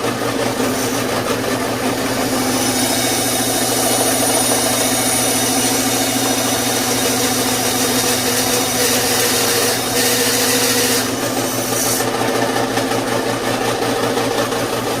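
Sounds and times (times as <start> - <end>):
power saw motor running: 0.0 - 15.0
saw cutting wood hiss: 0.6 - 1.1, 2.1 - 12.2.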